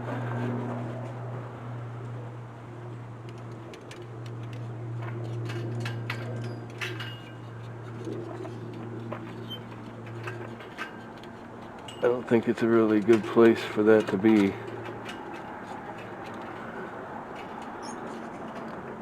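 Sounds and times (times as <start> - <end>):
metal tools clinking: 5.5 - 18.7.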